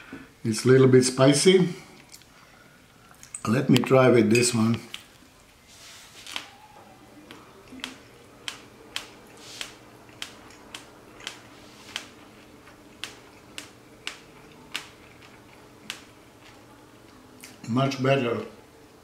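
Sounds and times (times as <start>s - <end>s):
person chewing bread: 7.3s - 16.7s.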